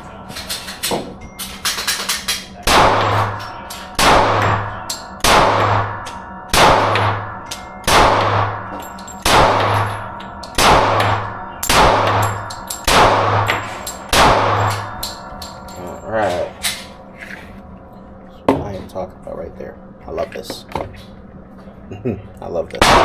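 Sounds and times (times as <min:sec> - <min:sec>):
pistol shots with ringing tail: 0:00.6 - 0:15.8, 0:22.8 - 0:23.0.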